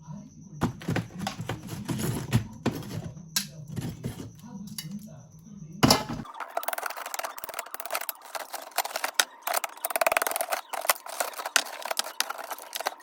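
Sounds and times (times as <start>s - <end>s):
ice being scraped and chipped: 6.8s - 13.0s.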